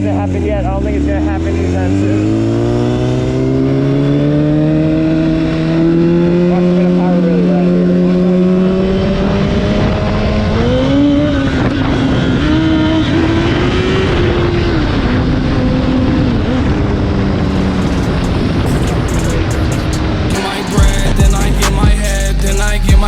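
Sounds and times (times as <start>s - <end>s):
motorcycle engine running: 0.0s - 23.0s
rush of wind noise: 8.7s - 20.7s.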